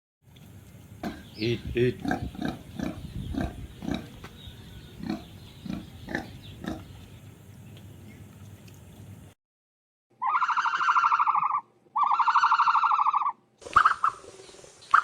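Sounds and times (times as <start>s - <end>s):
ostrich buzzing calls: 1.0s - 8.3s.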